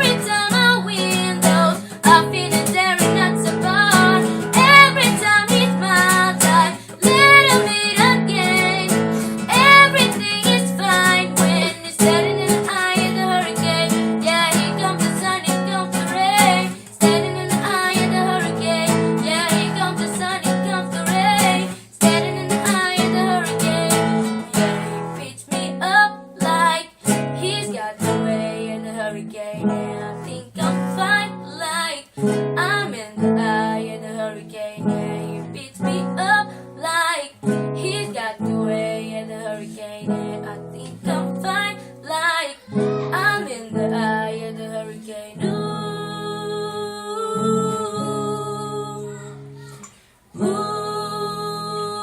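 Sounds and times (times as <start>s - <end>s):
acoustic guitar strumming: 0.0s - 36.5s, 37.4s - 42.0s, 42.6s - 49.8s
woman singing: 0.0s - 49.5s, 50.3s - 52.0s.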